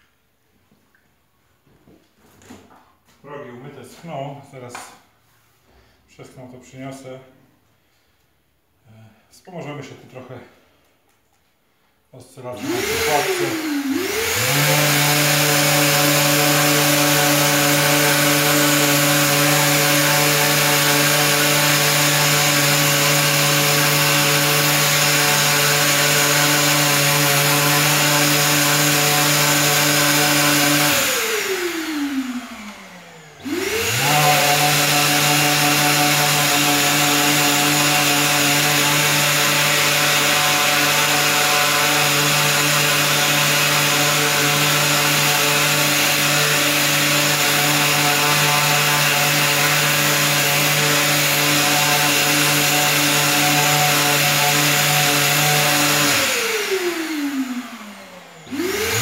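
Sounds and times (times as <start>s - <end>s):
orbital sander running: 12.6s - 59.0s.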